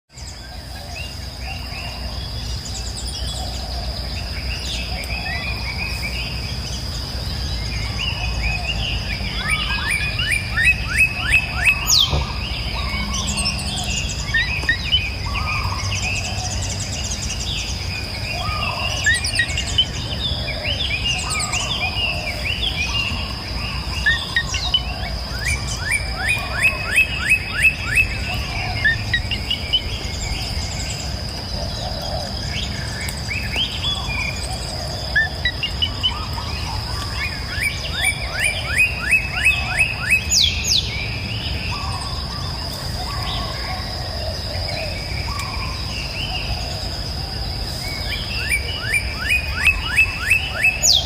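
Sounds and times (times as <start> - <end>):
songbirds singing: 0.1 - 51.0
low outdoor rumble: 0.2 - 38.7.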